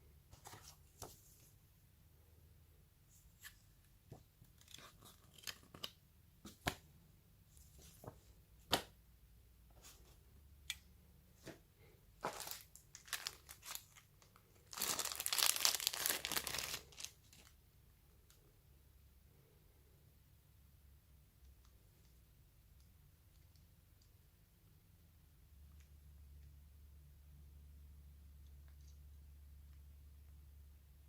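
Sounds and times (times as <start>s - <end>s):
wrapping crinkling and tearing: 12.2s - 17.6s.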